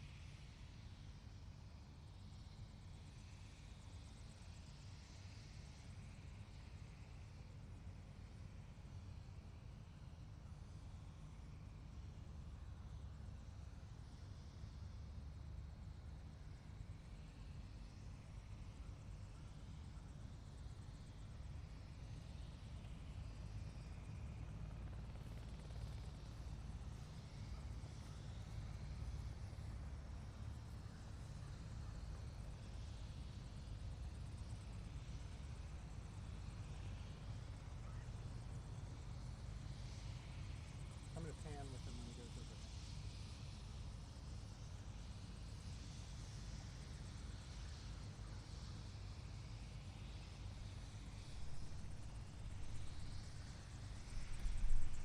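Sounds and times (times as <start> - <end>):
helicopter rumbling: 22.5 - 34.8, 51.1 - 55.0.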